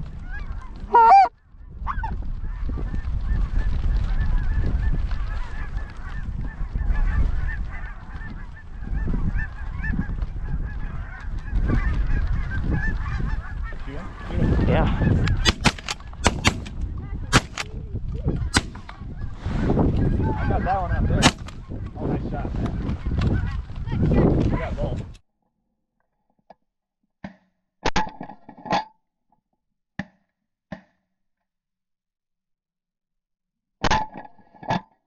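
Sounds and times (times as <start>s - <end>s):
wind rumble on microphone: 0.0s - 25.2s
geese yelping calls: 0.2s - 1.3s, 4.2s - 16.7s, 20.0s - 21.8s
sharp cracks: 15.2s - 17.8s, 18.4s - 19.0s, 21.2s - 21.7s.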